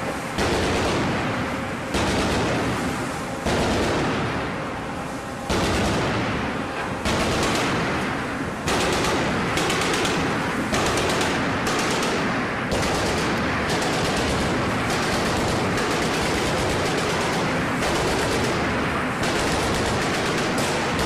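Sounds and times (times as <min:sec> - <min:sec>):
machine gun firing bursts: 0:00.4 - 0:01.3, 0:01.9 - 0:02.7, 0:03.5 - 0:04.2, 0:05.5 - 0:06.2, 0:07.0 - 0:08.0, 0:08.7 - 0:21.0.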